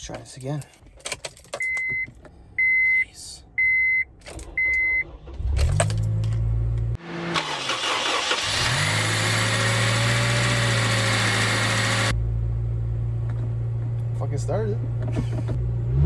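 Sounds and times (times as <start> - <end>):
car engine starting and idling: 4.2 - 16.0.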